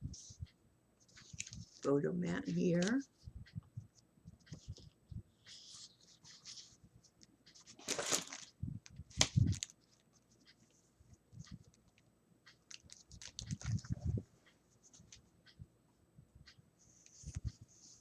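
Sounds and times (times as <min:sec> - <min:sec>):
paper rustling: 0:01.1 - 0:01.8, 0:07.6 - 0:08.5.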